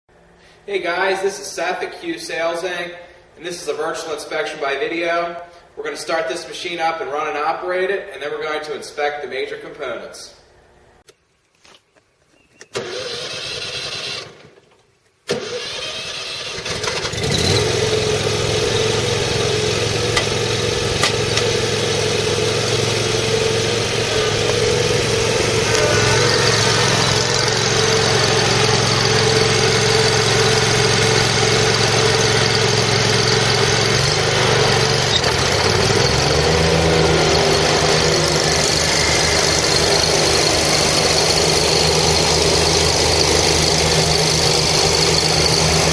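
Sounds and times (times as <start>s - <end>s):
mower engine starting and running: 12.7s - 45.9s.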